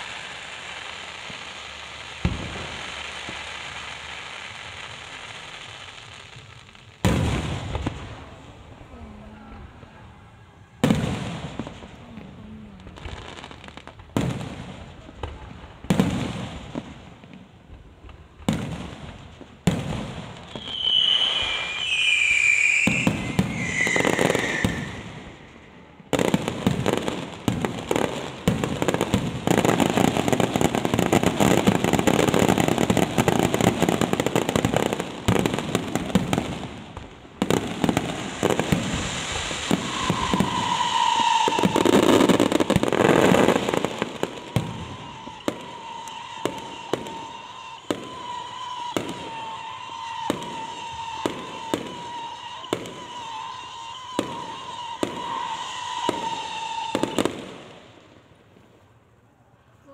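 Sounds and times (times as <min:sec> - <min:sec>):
firework falling whistles: 0:00.0 - 0:04.1, 0:19.7 - 0:57.8
fireworks bangs and crackles: 0:00.0 - 0:59.9.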